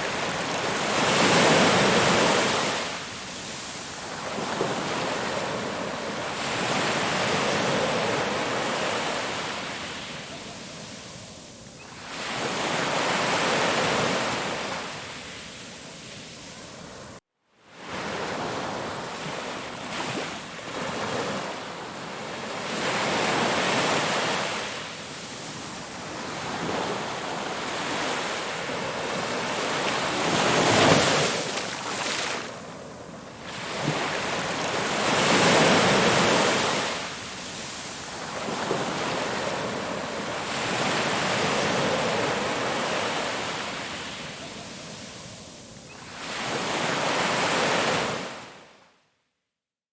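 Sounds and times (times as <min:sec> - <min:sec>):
ocean waves breaking on shore: 0:00.0 - 0:48.7.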